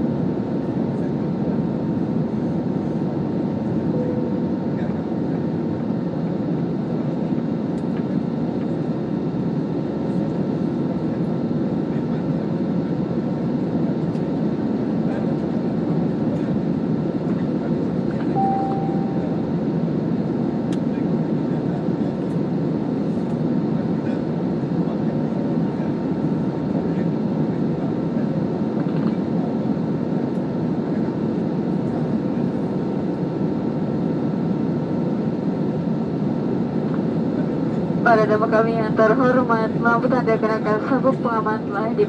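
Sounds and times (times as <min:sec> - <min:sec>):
airliner cabin engine roar: 0:00.0 - 0:42.0
short beep: 0:18.4 - 0:19.5.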